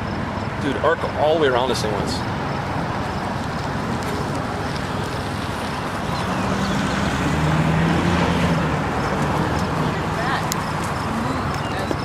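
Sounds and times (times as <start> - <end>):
vehicle and road noise: 0.0 - 12.0
low engine hum: 2.0 - 12.0.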